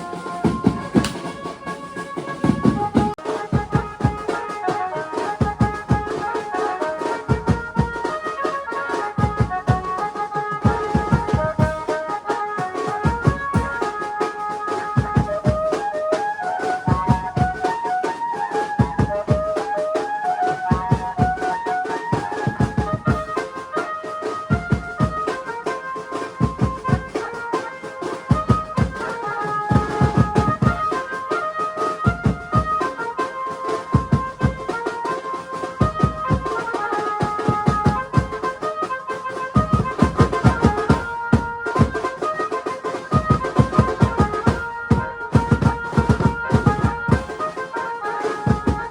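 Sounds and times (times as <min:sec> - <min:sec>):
fast drum beat: 0:00.0 - 0:06.3, 0:09.2 - 0:14.0, 0:28.3 - 0:31.1, 0:35.7 - 0:38.8, 0:39.4 - 0:42.4, 0:43.0 - 0:47.5.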